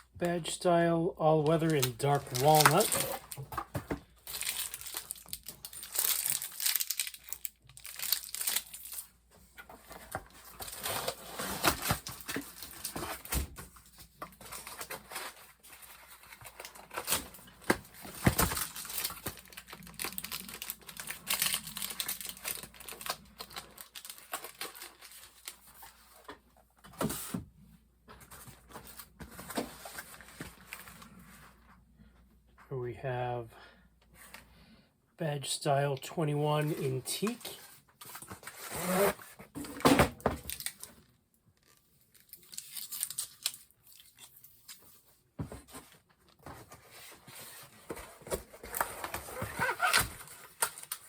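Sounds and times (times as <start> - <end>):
packaging crinkling and rustling: 1.4 - 26.4, 36.7 - 51.0
packaging tearing: 1.6 - 3.4, 4.3 - 9.0, 18.2 - 25.7, 42.2 - 44.7, 48.7 - 51.0.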